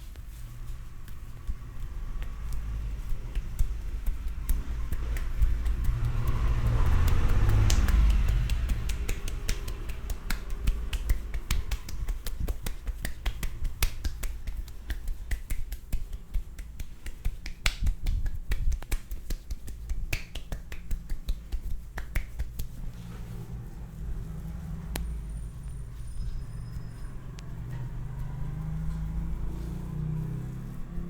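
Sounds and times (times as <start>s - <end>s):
fingers snapping: 1.0s - 23.4s, 24.4s - 25.2s.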